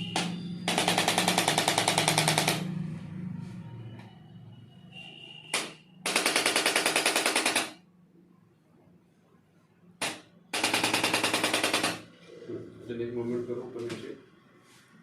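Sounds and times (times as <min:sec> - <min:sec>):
rapid mechanical tapping: 0:00.2 - 0:02.7, 0:10.0 - 0:12.1.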